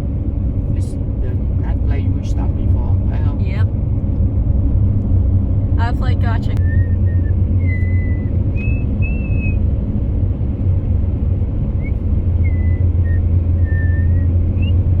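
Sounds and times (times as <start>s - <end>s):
car road rumble: 0.0s - 15.0s
thin high whistle: 6.6s - 9.6s, 11.8s - 14.8s.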